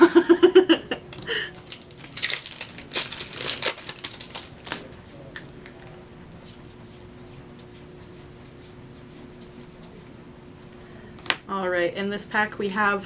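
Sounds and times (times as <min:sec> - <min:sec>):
foil wrapper crinkling: 0:01.1 - 0:05.9.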